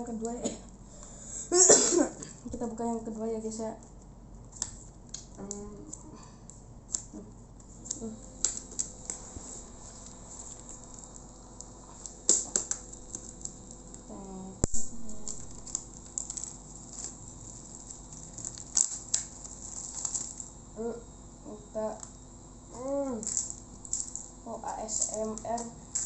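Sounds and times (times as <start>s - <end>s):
packaging crinkling: 3.8s - 20.6s, 23.2s - 26.0s.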